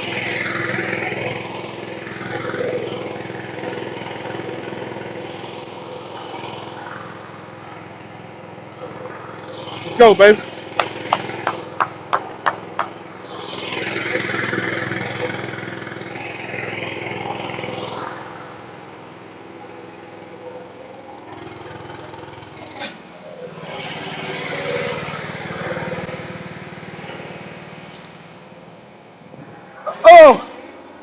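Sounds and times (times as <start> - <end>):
vehicle engine running: 0.0 - 29.8
passing traffic: 0.0 - 31.0.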